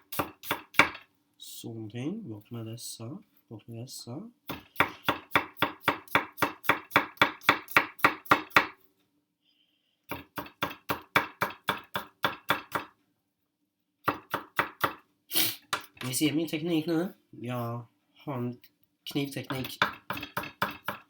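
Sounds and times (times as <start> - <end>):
knife chopping onion: 0.0 - 1.0, 4.5 - 8.8, 10.1 - 13.0, 14.0 - 15.0, 19.4 - 21.0.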